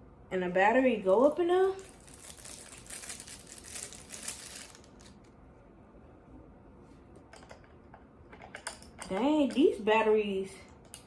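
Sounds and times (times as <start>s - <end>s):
crinkling handling noise: 1.8s - 5.4s.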